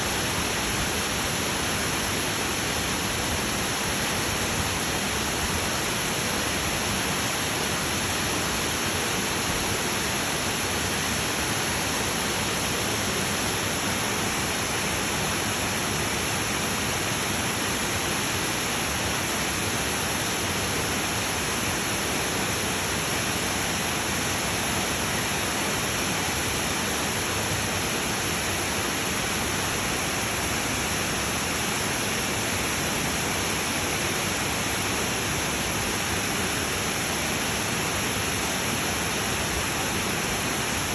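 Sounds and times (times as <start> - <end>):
rushing mountain water: 0.0 - 40.9.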